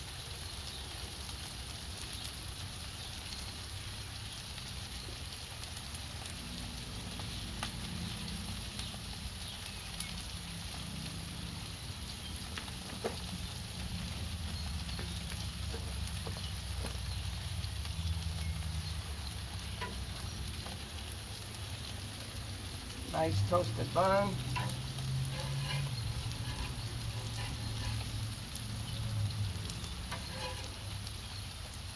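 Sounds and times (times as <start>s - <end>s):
food sizzling with crackles: 0.0s - 31.9s
low steady rumble: 22.7s - 31.0s.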